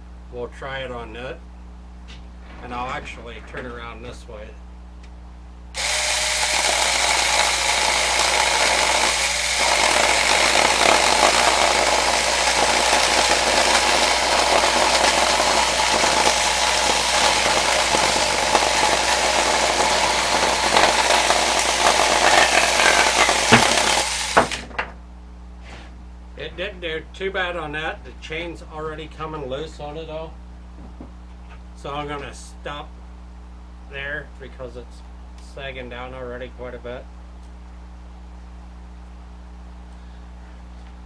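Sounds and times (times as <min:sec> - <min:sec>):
mini chainsaw cutting wood: 0:05.8 - 0:24.7
sharp knocks: 0:22.1 - 0:24.9.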